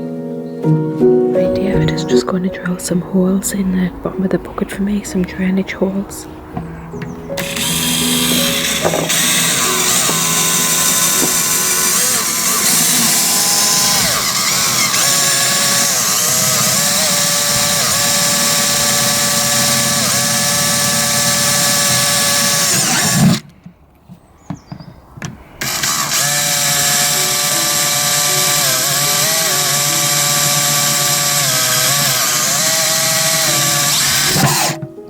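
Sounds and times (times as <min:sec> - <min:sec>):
electric drill boring into plastic: 0:07.4 - 0:23.4, 0:25.6 - 0:34.8.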